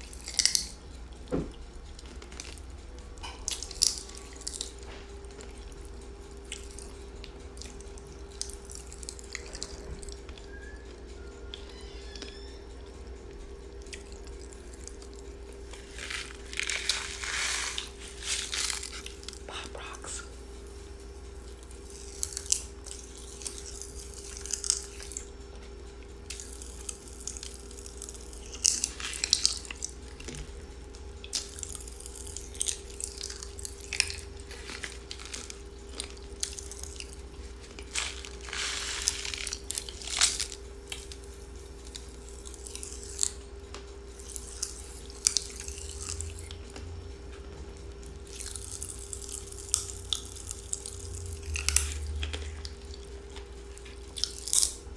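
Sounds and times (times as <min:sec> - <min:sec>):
popping candy crackling in mouth: 0:00.0 - 0:00.8, 0:13.9 - 0:20.4, 0:21.4 - 0:25.3, 0:26.3 - 0:30.4, 0:31.2 - 0:43.4
faint steady hum: 0:00.0 - 0:54.9.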